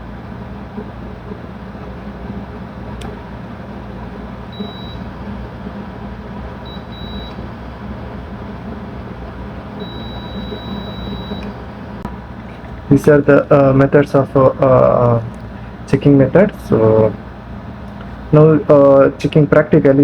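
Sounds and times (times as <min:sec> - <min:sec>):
low hum: 0:00.0 - 0:18.4
meter continuity beeps: 0:04.5 - 0:05.3, 0:06.6 - 0:07.5, 0:09.8 - 0:11.6.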